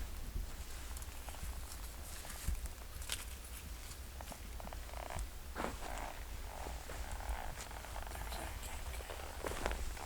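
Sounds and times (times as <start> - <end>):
animal purring trill: 4.7 - 10.0.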